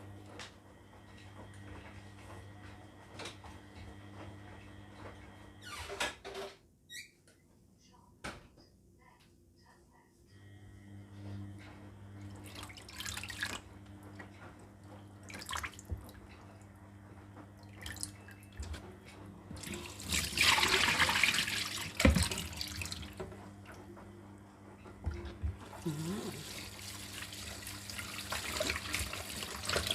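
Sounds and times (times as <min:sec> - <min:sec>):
tap water splashing in sink: 0:12.4 - 0:13.6, 0:15.3 - 0:16.2, 0:19.5 - 0:23.4, 0:25.0 - 0:29.9
gush of running water: 0:25.8 - 0:29.9.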